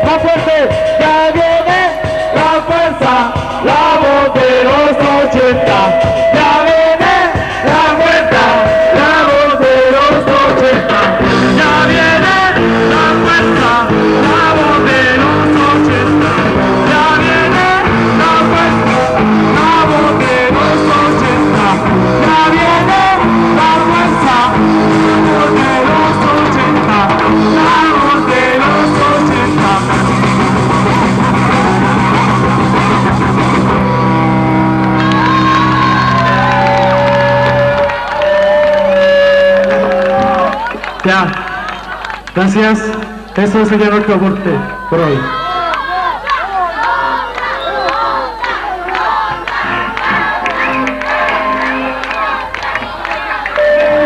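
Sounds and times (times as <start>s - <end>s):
person singing: 0.0s - 32.9s, 46.4s - 54.0s
amplified guitar: 0.0s - 41.4s, 49.3s - 54.0s.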